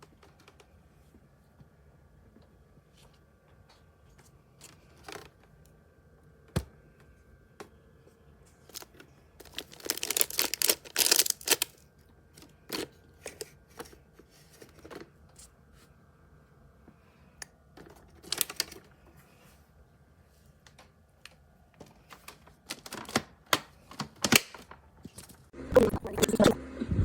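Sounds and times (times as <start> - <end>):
scratchy crinkling: 8.7 - 11.8.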